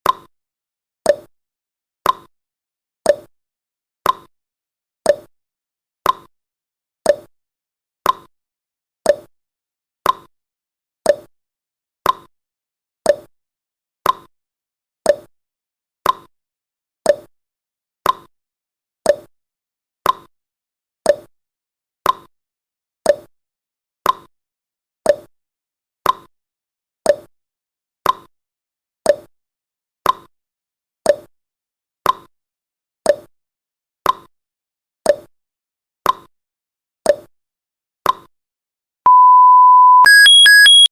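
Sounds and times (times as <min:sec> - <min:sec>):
countdown timer ticking: 0:39.1 - 0:40.9.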